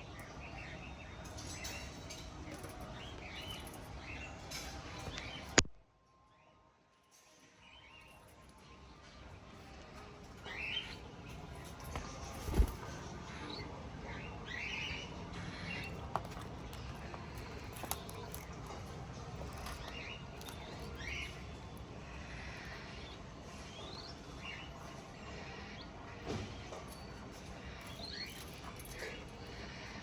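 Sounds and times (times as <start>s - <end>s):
low background noise: 0.0s - 30.0s
parrots chirping: 10.0s - 26.0s.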